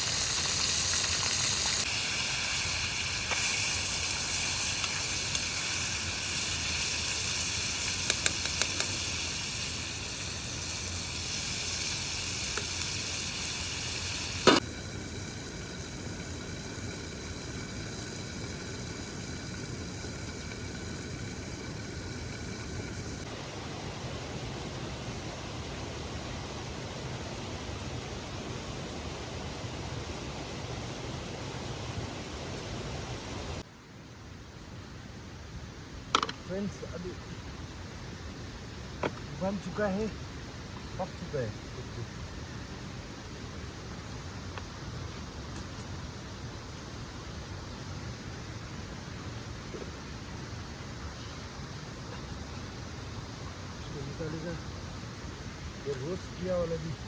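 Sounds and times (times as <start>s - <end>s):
curry sizzling in a pan: 0.0s - 23.3s.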